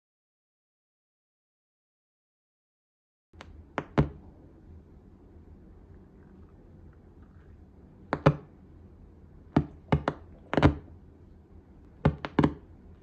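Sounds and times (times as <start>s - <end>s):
faint low hum: 3.4s - 13.0s
speaker popping and crackling: 9.6s - 10.9s.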